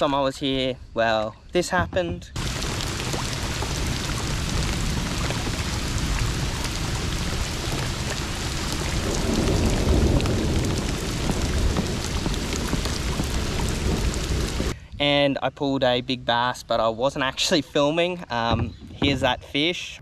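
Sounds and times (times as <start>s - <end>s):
heavy rain falling: 2.4s - 14.8s.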